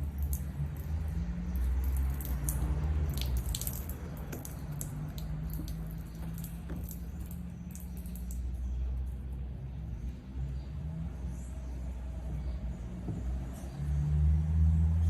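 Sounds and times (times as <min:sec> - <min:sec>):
water leak squishing and dripping: 0:00.0 - 0:09.6.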